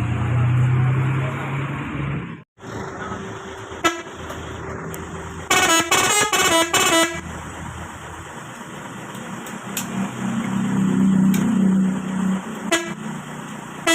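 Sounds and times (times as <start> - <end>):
truck multi-tone air horn: 3.0 - 4.4, 5.4 - 7.3, 12.6 - 13.2.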